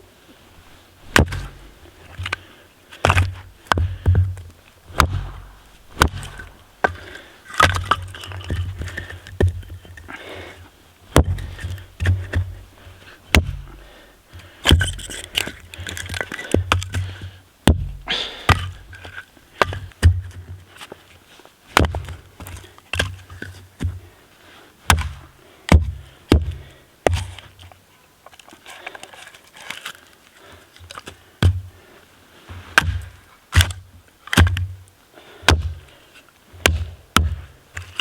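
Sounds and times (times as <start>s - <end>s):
firewood being chopped: 1.0s - 2.4s, 3.0s - 10.1s, 11.1s - 12.7s, 13.3s - 20.6s, 21.7s - 24.0s, 24.8s - 27.6s, 31.4s - 31.7s, 32.7s - 34.8s, 35.4s - 36.0s, 36.6s - 38.0s.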